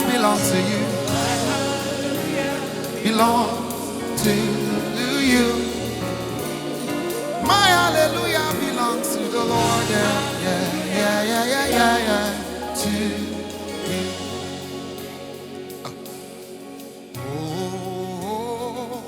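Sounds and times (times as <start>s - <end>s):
keyboard chords and bass: 0.0s - 19.0s
voices singing gospel: 0.0s - 19.0s.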